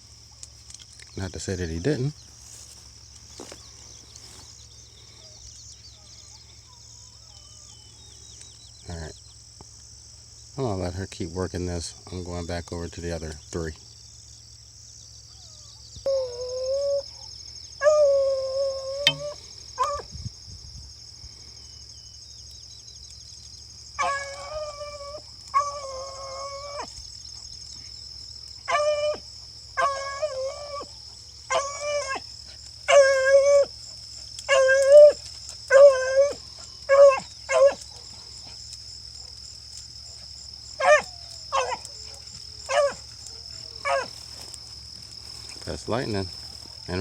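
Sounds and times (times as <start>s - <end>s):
hounds baying: 15.2s - 20.1s, 23.8s - 27.9s, 28.5s - 47.0s
dogs barking: 28.6s - 39.6s, 40.4s - 44.5s.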